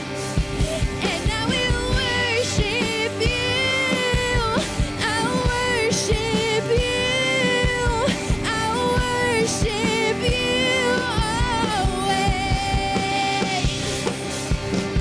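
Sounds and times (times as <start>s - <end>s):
band with steady drum beat: 0.0s - 15.0s
person singing long notes: 0.6s - 13.8s.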